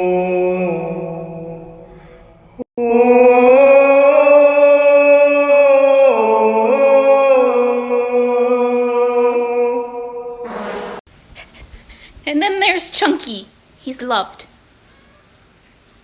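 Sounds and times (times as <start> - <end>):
voice singing long held notes: 0.0 - 11.0.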